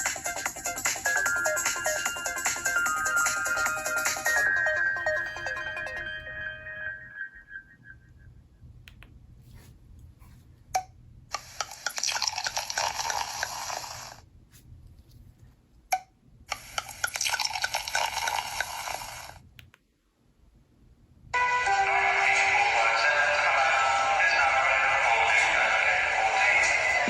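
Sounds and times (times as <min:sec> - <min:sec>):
crackling noise: 0:11.4 - 0:14.2, 0:16.5 - 0:19.4.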